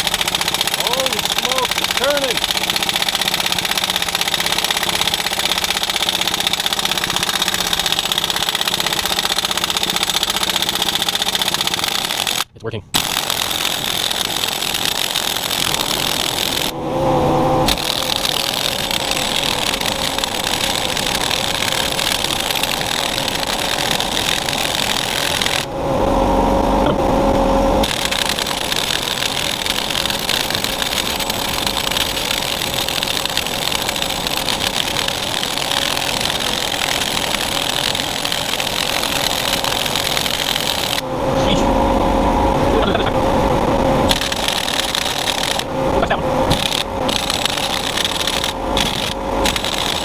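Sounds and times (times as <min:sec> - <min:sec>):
impact wrench hammering: 0:00.0 - 0:16.7
low humming tone: 0:13.3 - 0:50.0.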